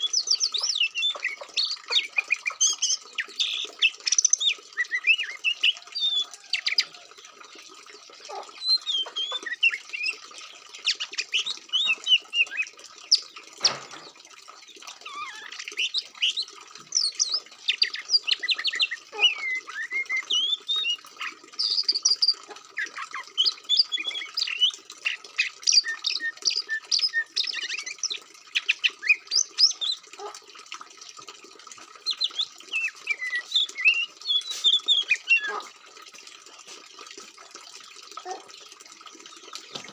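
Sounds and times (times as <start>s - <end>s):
songbird chirps and whistles: 0.0s - 6.9s, 8.5s - 10.2s, 15.0s - 24.8s, 25.4s - 30.0s, 32.0s - 35.6s.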